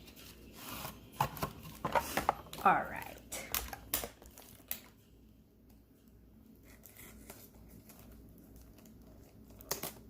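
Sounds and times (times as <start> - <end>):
packaging rustling: 3.4 - 5.0, 6.6 - 10.0.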